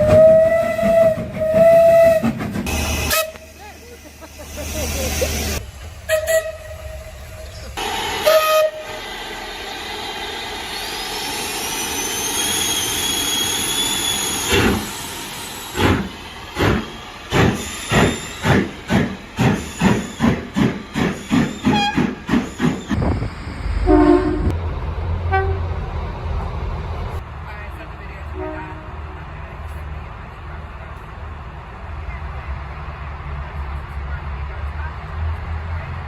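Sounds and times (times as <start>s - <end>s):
steam locomotive whistle: 0.0s - 3.6s, 6.0s - 7.2s, 7.8s - 9.1s, 21.4s - 22.8s, 23.7s - 24.5s
steam locomotive exhaust chuffs: 0.0s - 24.6s
steam hissing: 2.6s - 5.6s, 7.5s - 23.0s.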